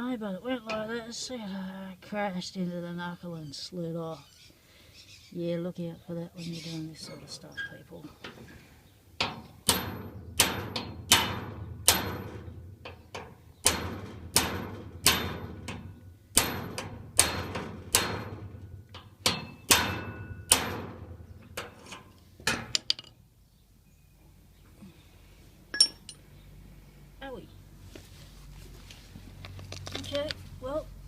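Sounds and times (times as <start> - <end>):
hammer striking steel padlock: 9.2 - 12.6, 13.6 - 21.7, 25.8 - 26.2.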